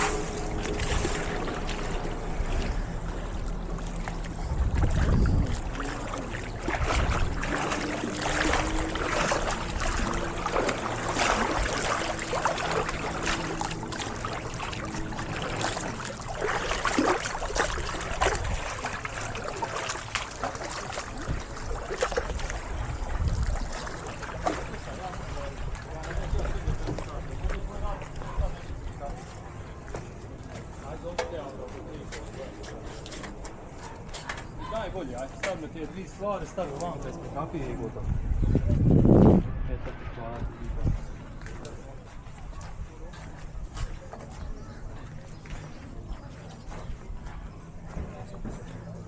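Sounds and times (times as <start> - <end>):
water washing: 0.0 - 28.9
wind buffeting microphone: 0.0 - 29.5, 37.1 - 48.4
low engine hum: 0.0 - 34.7.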